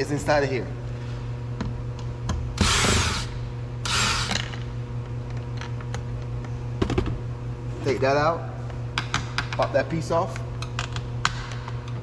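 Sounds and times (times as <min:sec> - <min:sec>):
cordless drill driver bursts: 0:02.6 - 0:04.5.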